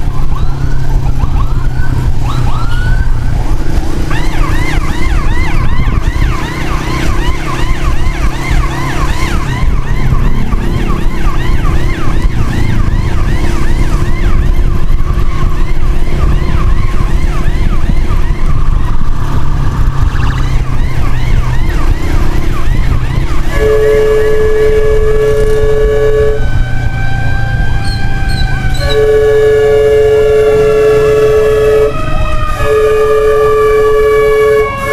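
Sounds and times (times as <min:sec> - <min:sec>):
emergency siren yelping: 0:00.0 - 0:34.9
road and wind rumble: 0:00.0 - 0:34.9
held horn-like tone: 0:23.3 - 0:34.9.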